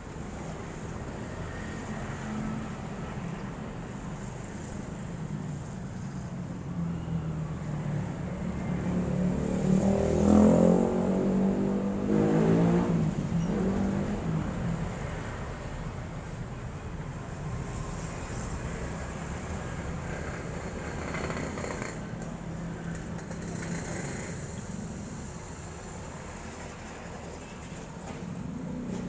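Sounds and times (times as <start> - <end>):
vehicle engine passing by: 7.2 - 15.8.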